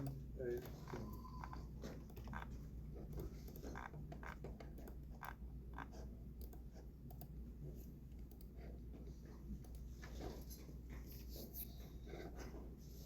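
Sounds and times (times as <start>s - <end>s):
computer keyboard typing: 0.0s - 7.4s.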